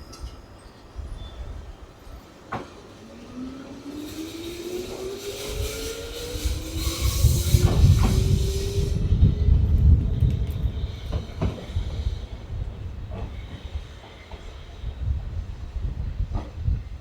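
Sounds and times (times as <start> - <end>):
electric train motors whining: 2.6 - 14.8
heavy wheel rumble: 2.9 - 13.4.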